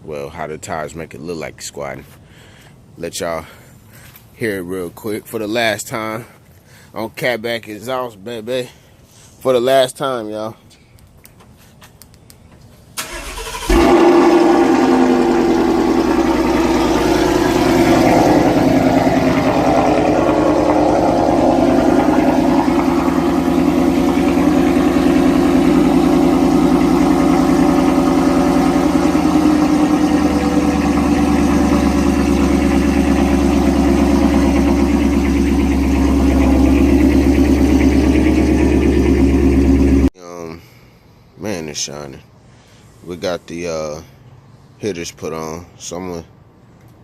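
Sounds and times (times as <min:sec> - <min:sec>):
car engine idling: 0:13.0 - 0:40.1.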